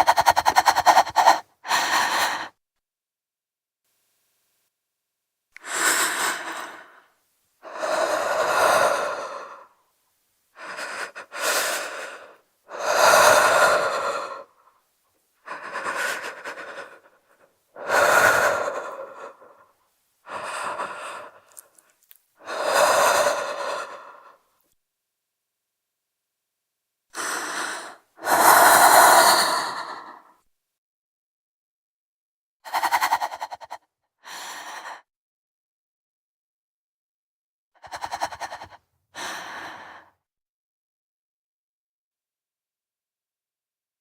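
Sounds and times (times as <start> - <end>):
woman breathing tensely: 0.0 - 2.6, 5.6 - 9.8, 10.5 - 14.8, 15.4 - 24.5, 27.1 - 30.4, 32.6 - 35.1, 37.8 - 40.2.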